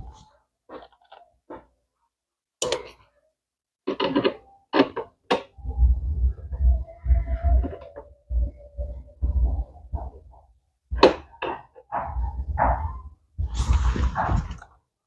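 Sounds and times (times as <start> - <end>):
uneven low rumble: 5.6 - 10.4.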